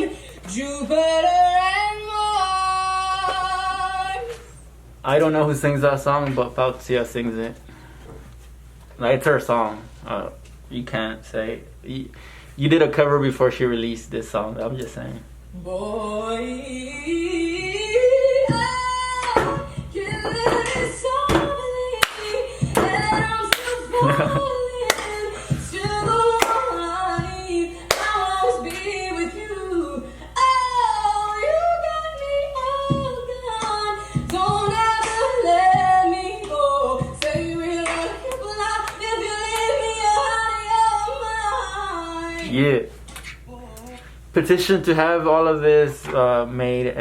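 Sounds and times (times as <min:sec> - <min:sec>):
woman singing: 0:00.0 - 0:04.6, 0:15.5 - 0:42.6, 0:43.3 - 0:44.2.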